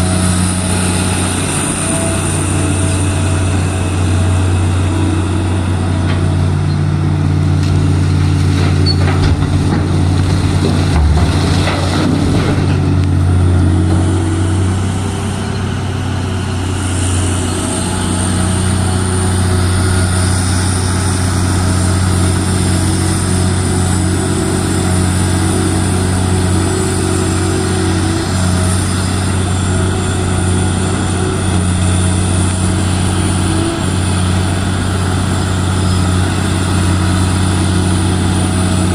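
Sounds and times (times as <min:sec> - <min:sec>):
heavy machinery engine hum: 0:00.0 - 0:38.9
knocks and clatter: 0:08.5 - 0:13.1.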